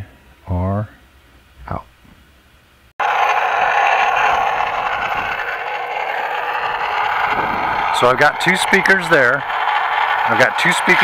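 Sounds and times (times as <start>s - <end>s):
toy truck motor whirring: 3.0s - 11.0s.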